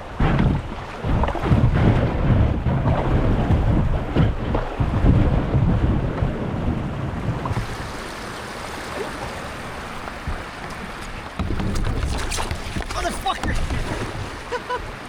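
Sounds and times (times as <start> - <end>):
wind buffeting microphone: 0.0 - 15.0
river water rushing: 7.5 - 15.0.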